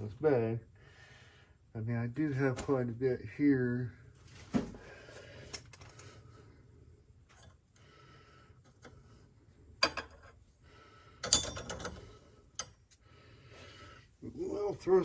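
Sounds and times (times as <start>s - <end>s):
metal wrenches clinking: 11.2s - 12.7s.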